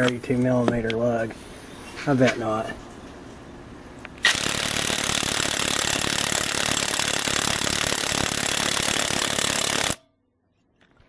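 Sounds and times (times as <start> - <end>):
impact wrench rattling: 4.2 - 10.0.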